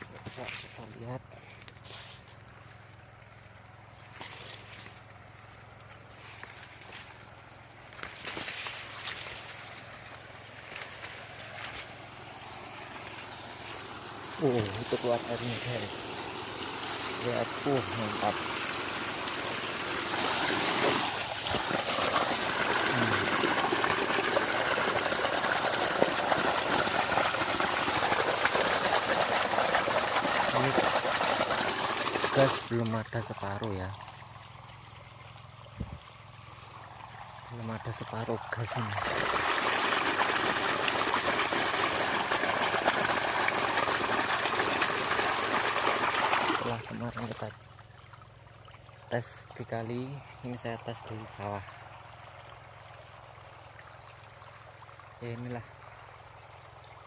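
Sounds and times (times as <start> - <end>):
water pump engine: 0.0 - 57.0
water gushing from hose: 7.2 - 49.8.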